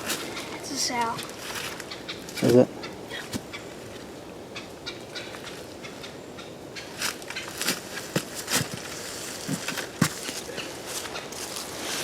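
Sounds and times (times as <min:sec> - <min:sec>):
rustling in dry leaves: 0:00.0 - 0:04.2, 0:05.1 - 0:12.0
footsteps in brush: 0:06.9 - 0:12.0.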